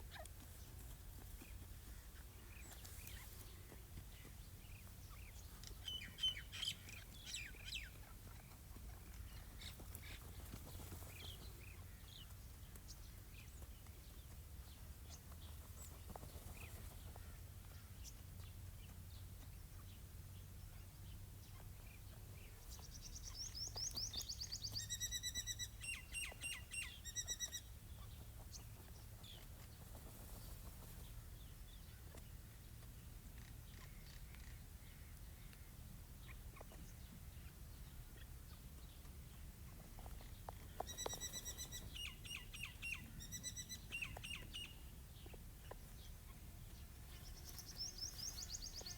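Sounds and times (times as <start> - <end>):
partridge calling: 23.0 - 27.7.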